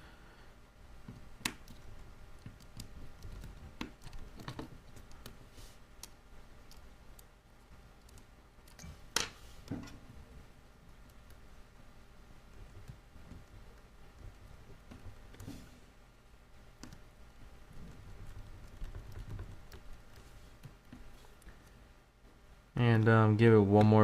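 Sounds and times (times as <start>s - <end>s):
small clicks and taps: 1.0s - 5.4s.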